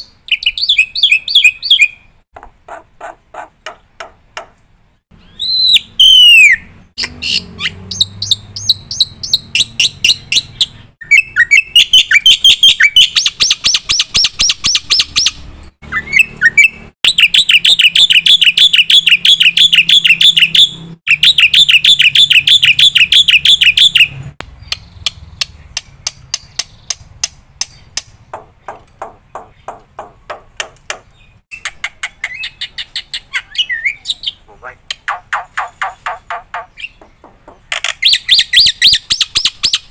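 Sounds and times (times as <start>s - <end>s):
bird whistling and chattering: 0.0s - 2.0s, 5.2s - 25.6s, 31.5s - 37.1s, 37.7s - 39.9s.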